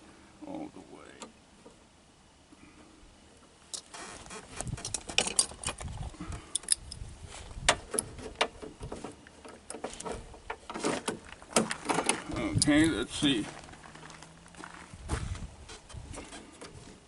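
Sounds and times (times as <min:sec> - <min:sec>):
metallic clicks taps and scrapes: 0:06.5 - 0:07.0.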